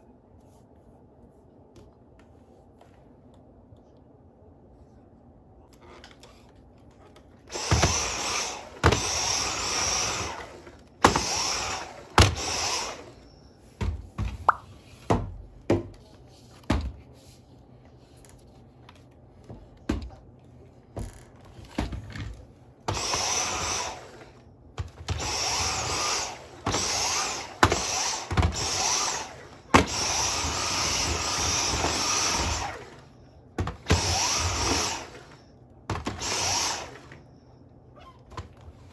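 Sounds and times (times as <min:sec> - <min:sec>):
vacuum cleaner motor bursts: 0:07.5 - 0:13.3, 0:22.9 - 0:37.3.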